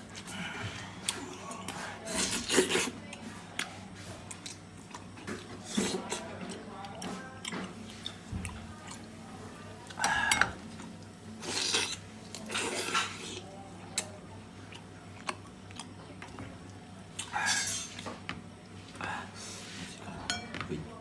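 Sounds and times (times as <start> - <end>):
dishes and utensils clinking: 20.1 - 20.7.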